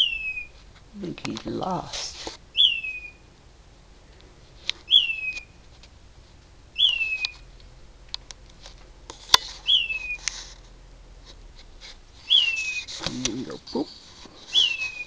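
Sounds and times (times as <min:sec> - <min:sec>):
bird whistling downward note: 0:00.0 - 0:00.5, 0:02.6 - 0:03.2, 0:04.9 - 0:05.5, 0:06.8 - 0:07.4, 0:09.6 - 0:10.2, 0:12.2 - 0:13.0, 0:14.5 - 0:15.0.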